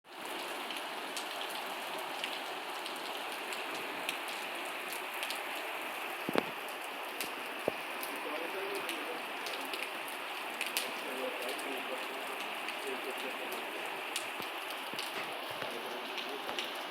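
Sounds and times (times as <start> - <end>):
steady rain falling: 0.1 - 16.9
sharp raindrop taps: 6.2 - 16.9.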